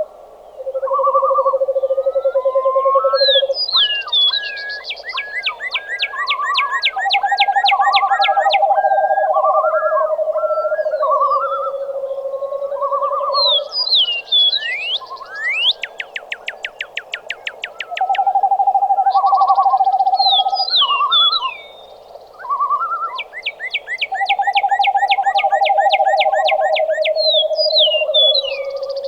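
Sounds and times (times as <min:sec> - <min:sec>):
bird whistling downward notes: 0:13.3 - 0:16.7
low pulsing bird trills: 0:22.3 - 0:29.0
warbled bird phrases: 0:22.4 - 0:29.0.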